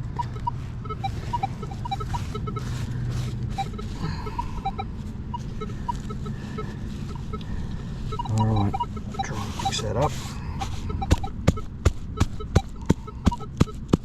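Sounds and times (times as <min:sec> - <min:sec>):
rustling: 0:00.2 - 0:11.3.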